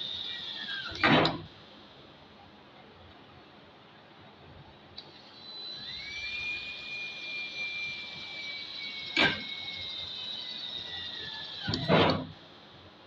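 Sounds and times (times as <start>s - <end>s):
electric drill whining: 0.0s - 1.8s, 5.0s - 12.6s.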